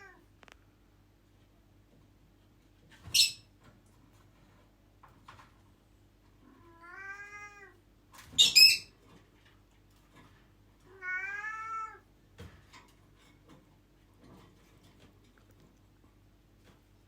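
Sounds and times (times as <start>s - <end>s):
cat meowing: 6.4s - 7.8s, 10.9s - 12.1s.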